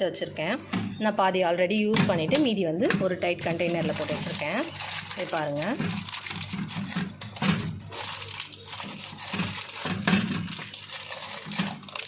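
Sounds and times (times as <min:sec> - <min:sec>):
plastic packaging crinkling: 0:03.4 - 0:12.0.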